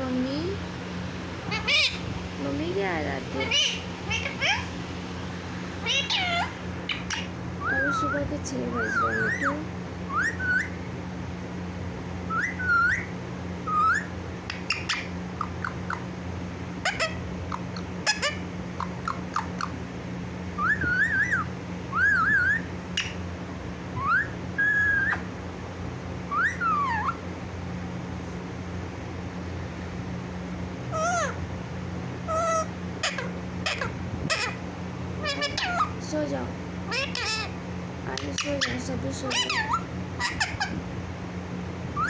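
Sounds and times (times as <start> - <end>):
steady low hum: 0.0 - 42.0
harsh parrot calls: 1.4 - 2.2, 3.3 - 4.9, 5.6 - 10.8, 12.3 - 16.1, 16.7 - 19.8, 20.6 - 23.2, 24.0 - 25.4, 26.3 - 27.3, 30.9 - 31.4, 32.2 - 36.1, 36.8 - 37.6, 38.2 - 40.8
parrot whistling: 1.5 - 2.0, 3.4 - 4.7, 5.8 - 9.5, 10.1 - 10.8, 12.3 - 16.0, 16.8 - 19.8, 20.6 - 23.2, 24.0 - 25.3, 26.3 - 27.2, 30.9 - 31.4, 32.3 - 34.6, 35.2 - 36.0, 36.9 - 37.6, 39.3 - 40.8.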